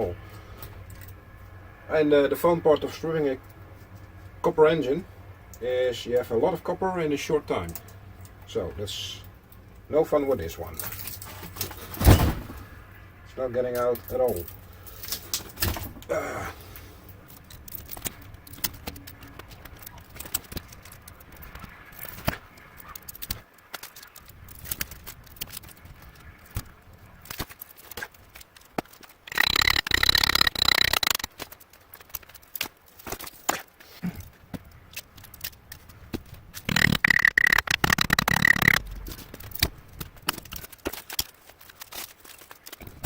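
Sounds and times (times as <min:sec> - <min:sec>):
metallic clicks and scrapes: 0:17.3 - 0:33.7, 0:34.9 - 0:43.0
harsh ringing scraping burst: 0:36.7 - 0:38.8.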